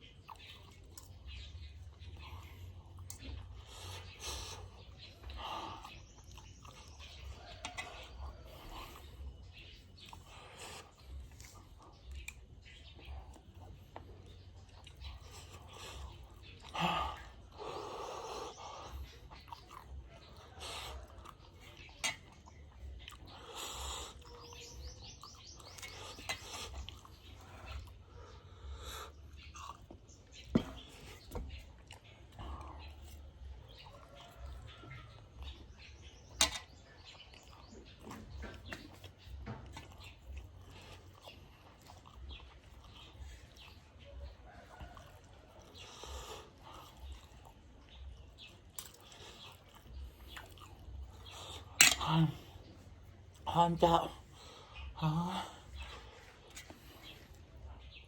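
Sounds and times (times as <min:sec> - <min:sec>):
chewing clicks and crunches: 0:00.0 - 0:53.5
person breathing while eating: 0:25.6 - 0:29.5, 0:42.9 - 0:47.4.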